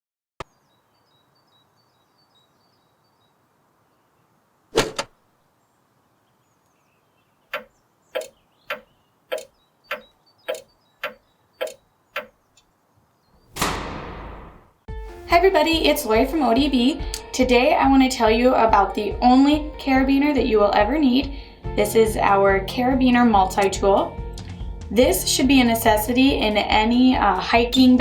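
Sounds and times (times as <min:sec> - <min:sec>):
sharp clicks: 0:07.5 - 0:12.7.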